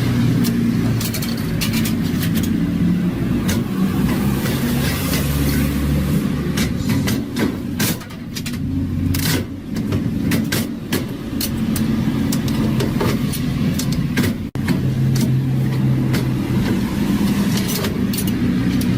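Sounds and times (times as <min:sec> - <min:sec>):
sharp clicks and knocks: 0:00.3 - 0:02.6, 0:03.4 - 0:05.7, 0:06.4 - 0:18.9.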